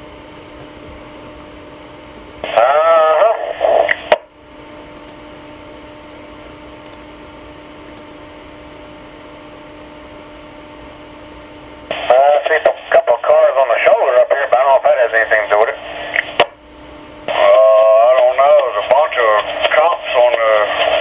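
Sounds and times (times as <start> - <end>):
garbled radio voice: 2.4 - 4.2, 11.9 - 16.5, 17.3 - 21.0
radio receiver hissing: 2.4 - 4.3, 11.9 - 16.6, 17.2 - 21.0
radio squelch click: 3.4 - 4.3, 15.8 - 16.6.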